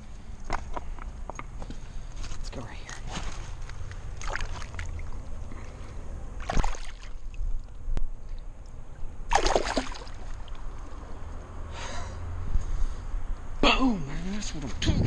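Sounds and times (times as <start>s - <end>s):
river water splashing: 3.9s - 5.7s, 6.3s - 7.8s, 8.4s - 11.4s.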